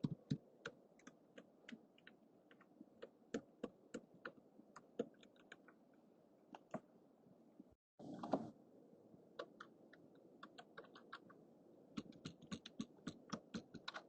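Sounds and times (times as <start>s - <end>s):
keyboard typing clicks: 12.0s - 14.0s.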